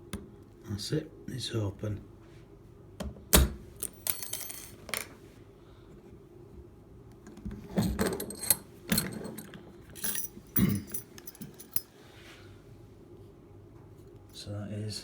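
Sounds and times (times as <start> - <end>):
metallic clinks of padlock and tools: 3.8 - 4.7, 8.0 - 11.9.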